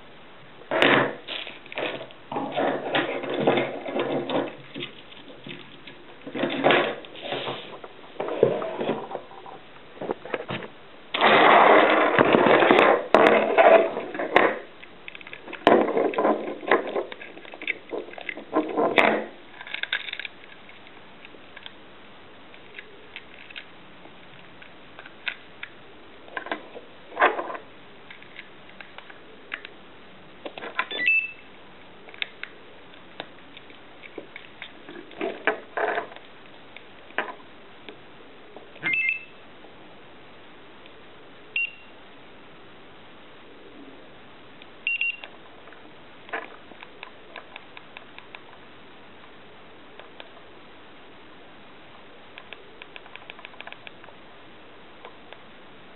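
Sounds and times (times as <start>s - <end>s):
high beep: 38.8s - 39.3s, 41.6s - 41.9s.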